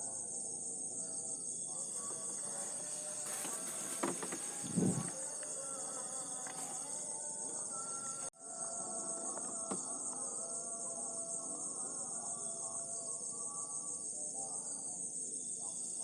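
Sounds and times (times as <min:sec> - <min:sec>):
crickets and insects shrilling: 0:01.7 - 0:08.3.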